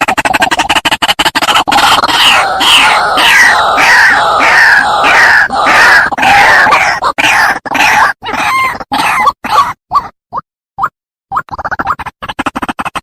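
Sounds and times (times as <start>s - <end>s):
bird harsh croaking calls: 0.2s - 9.8s.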